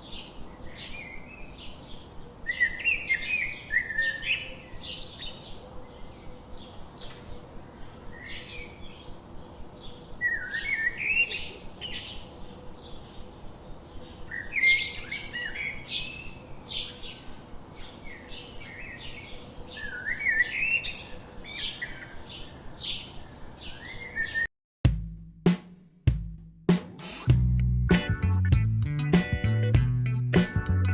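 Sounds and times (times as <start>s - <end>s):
songbirds chirping: 0.0s - 24.5s.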